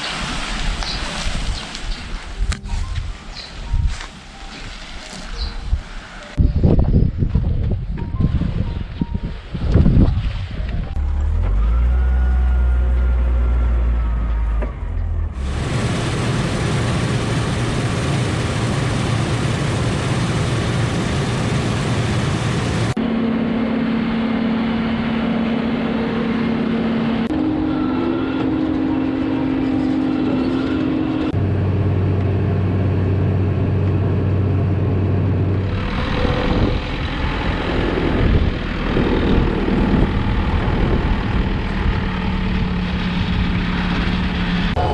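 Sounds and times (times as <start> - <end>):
heavy machinery engine drone: 11.0 - 44.9
loud rushing noise: 15.4 - 23.0.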